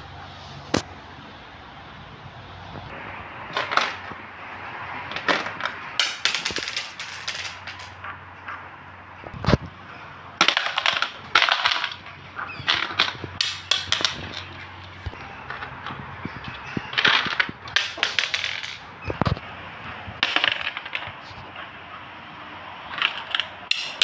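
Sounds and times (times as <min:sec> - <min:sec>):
small stone clicking and rattling: 0:05.2 - 0:08.0, 0:10.4 - 0:14.6, 0:16.9 - 0:18.8, 0:20.2 - 0:21.4.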